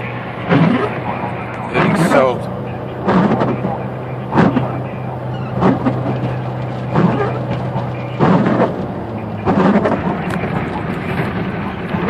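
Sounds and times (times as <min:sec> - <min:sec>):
car engine and road drone: 0:00.0 - 0:12.0
windshield wipers swish and thump: 0:03.0 - 0:11.3.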